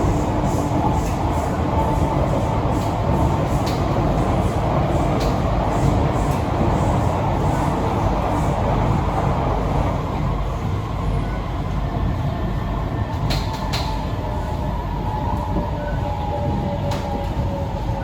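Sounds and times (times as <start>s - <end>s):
train wheel-on-rail rumble: 0.0s - 18.0s.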